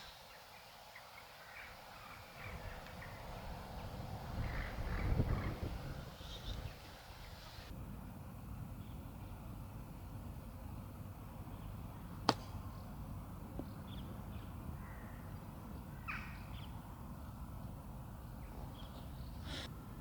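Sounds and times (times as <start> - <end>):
low outdoor background noise: 0.0 - 20.0
golf club striking ball: 12.3 - 12.6.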